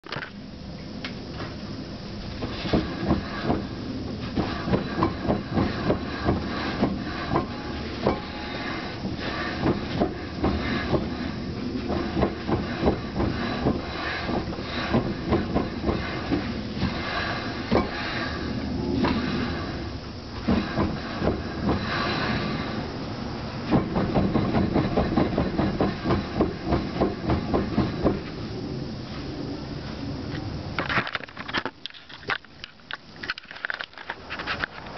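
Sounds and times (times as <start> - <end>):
steady rumble: 0.0 - 34.9
steady running noise: 0.0 - 34.9
differential knocking clunks: 2.4 - 11.2, 11.8 - 18.2, 20.4 - 22.1, 23.6 - 28.4.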